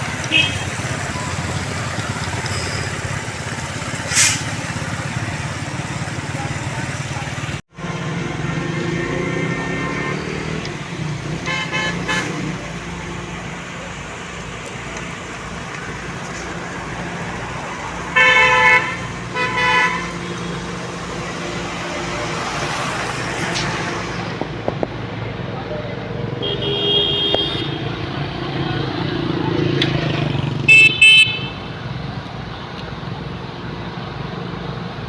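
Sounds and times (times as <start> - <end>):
street traffic: 0.0 - 35.0
vehicle horn honking: 0.3 - 0.8, 9.2 - 10.6, 11.4 - 12.5, 18.2 - 20.2, 26.4 - 27.9, 30.6 - 31.7.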